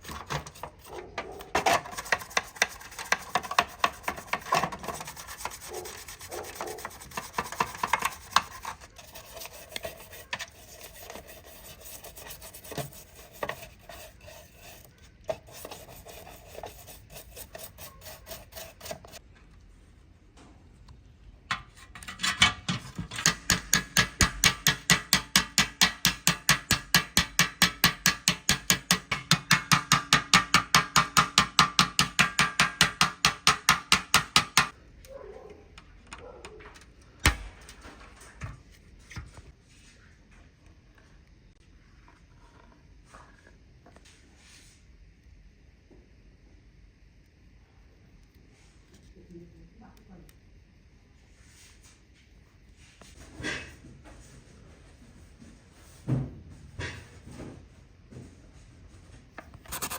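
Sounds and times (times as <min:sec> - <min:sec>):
file rasping over a surface: 0:00.0 - 0:19.2, 0:22.9 - 0:34.8, 0:59.7 - 0:59.9.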